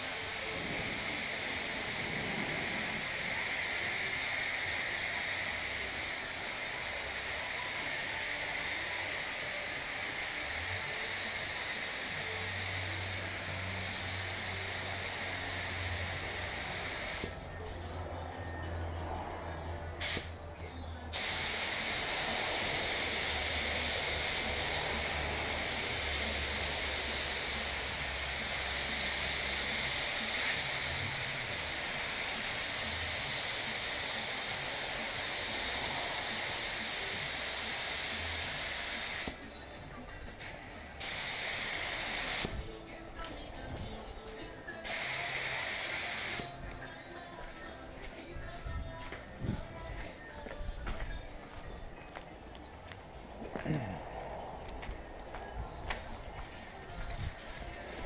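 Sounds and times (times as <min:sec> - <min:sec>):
spray gun hissing: 0:00.0 - 0:17.4, 0:20.0 - 0:20.3, 0:21.1 - 0:39.4, 0:41.0 - 0:42.6, 0:44.8 - 0:46.6.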